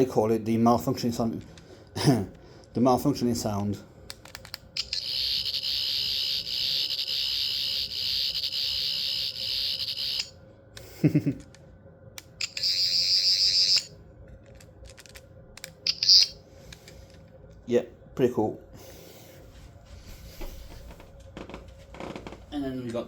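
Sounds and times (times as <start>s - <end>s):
toy electronic warbling buzz: 4.8s - 10.4s, 12.4s - 14.0s, 15.8s - 16.4s.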